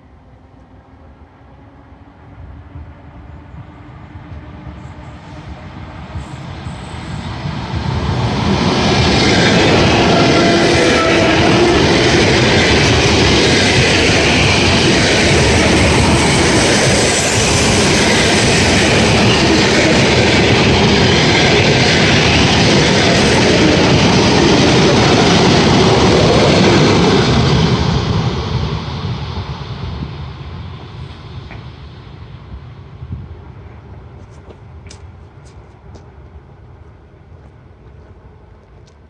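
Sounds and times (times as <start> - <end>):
train wheels rumbling on rails: 0.0 - 39.0.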